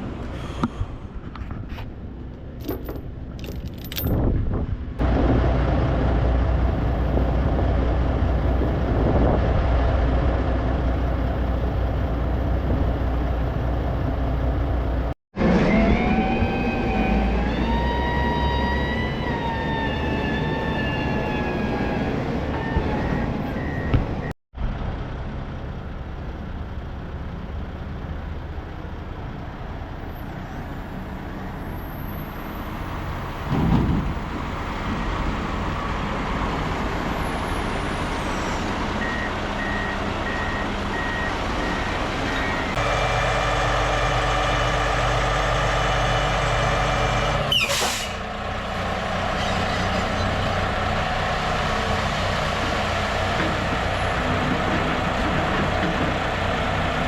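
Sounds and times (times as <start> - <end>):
diesel truck engine running: 4.6 - 15.7, 22.2 - 57.0
air brake release hiss: 47.5 - 48.3.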